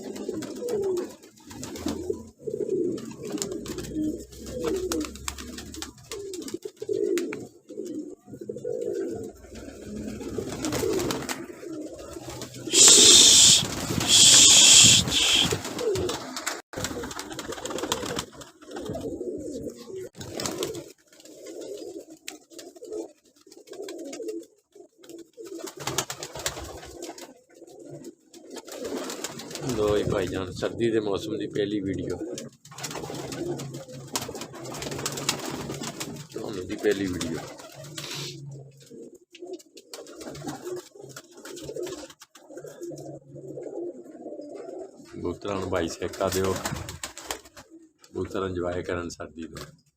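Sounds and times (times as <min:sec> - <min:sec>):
pigeons cooing: 0:00.0 - 0:49.9
loud bursts of hiss: 0:12.7 - 0:15.6.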